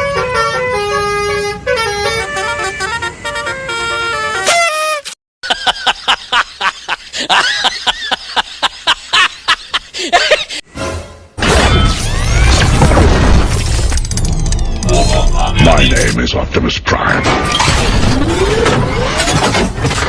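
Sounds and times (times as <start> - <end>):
crashing clatter of effects: 11.4 - 16.2.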